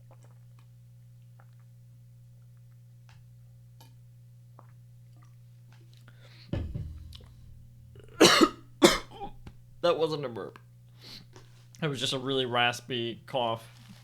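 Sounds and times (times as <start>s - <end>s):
sudden low sound: 6.6s - 8.2s
man coughing raspily: 8.0s - 9.3s
man hiccuping: 8.0s - 9.3s.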